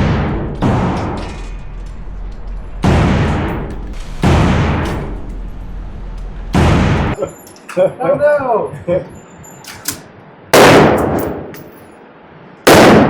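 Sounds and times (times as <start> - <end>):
gunshots with echoing tail: 0.0 - 7.2, 10.5 - 11.5, 12.7 - 13.0.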